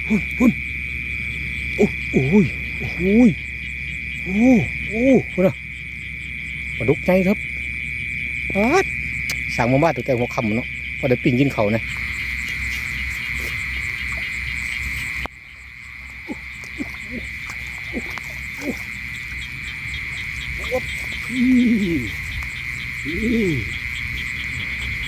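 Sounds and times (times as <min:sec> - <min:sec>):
frogs croaking: 0:00.0 - 0:25.0
high insect trill: 0:00.0 - 0:25.0.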